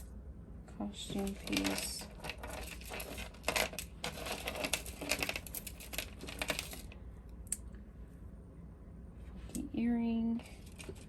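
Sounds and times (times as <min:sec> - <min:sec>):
jewelry clinking and rattling: 0:01.2 - 0:07.0.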